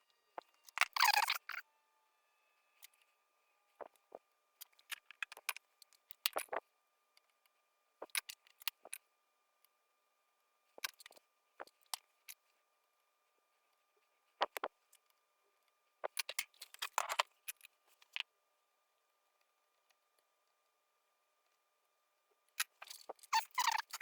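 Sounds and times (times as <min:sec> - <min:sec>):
small clicks and taps of tools: 0:04.6 - 0:06.6, 0:07.2 - 0:09.0, 0:10.8 - 0:12.4, 0:14.4 - 0:18.3.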